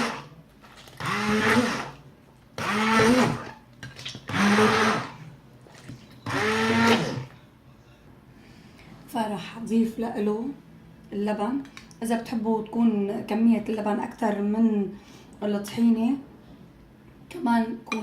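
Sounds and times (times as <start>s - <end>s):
blender motor whining: 0.0s - 0.3s, 1.0s - 2.0s, 2.6s - 3.5s, 4.3s - 5.2s, 6.2s - 7.3s.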